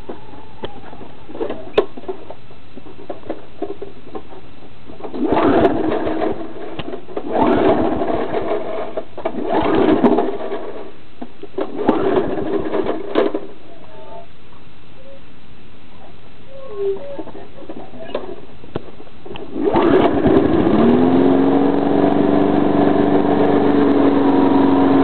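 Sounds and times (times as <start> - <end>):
lawn mower engine running: 2.8 - 13.5, 17.6 - 25.0.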